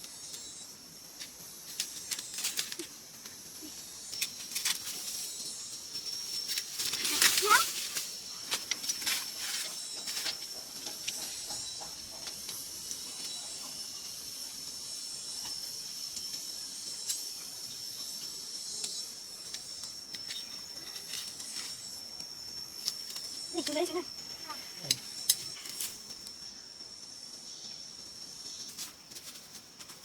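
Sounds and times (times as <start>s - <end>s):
hiss: 0.0s - 23.2s
insects buzzing: 0.0s - 30.0s.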